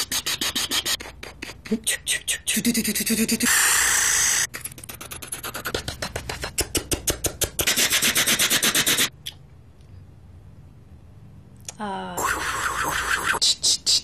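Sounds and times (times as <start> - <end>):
person imitating a helicopter: 0.0 - 9.1, 12.2 - 14.0.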